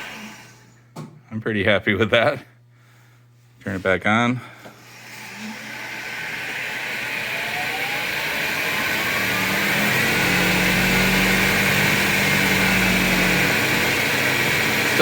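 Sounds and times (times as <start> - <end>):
lathe motor spinning up with whine: 4.8 - 15.0.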